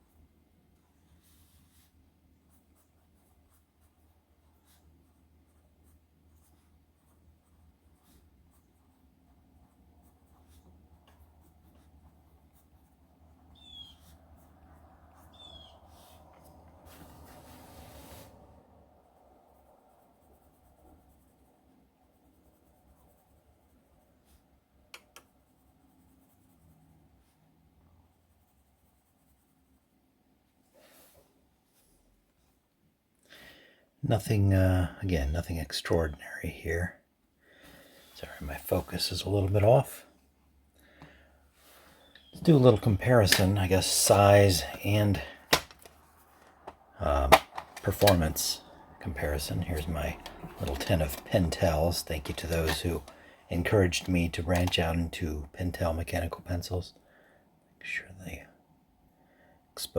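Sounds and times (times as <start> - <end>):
pencil scratching on paper: 0.8 - 24.6, 25.2 - 29.9
low steady hum: 34.0 - 59.9.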